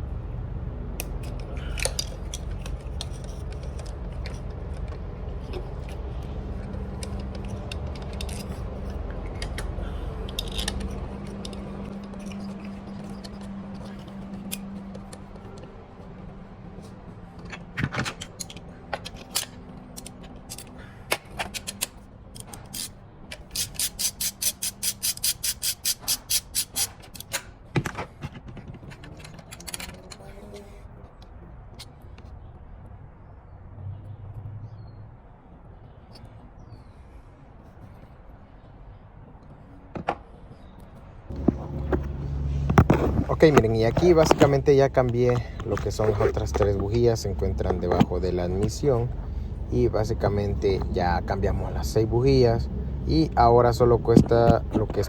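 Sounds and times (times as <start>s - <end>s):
steady low hum: 0.0s - 27.0s, 35.0s - 55.0s
ratchet wrench clicking: 21.6s - 27.4s.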